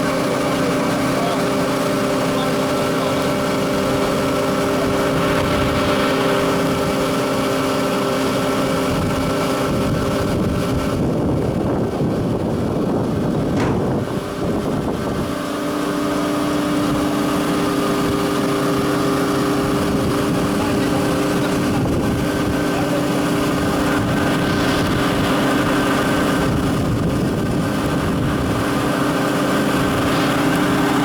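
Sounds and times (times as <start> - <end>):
blower fan humming: 0.0 - 31.0
burner rushing noise: 0.0 - 31.0.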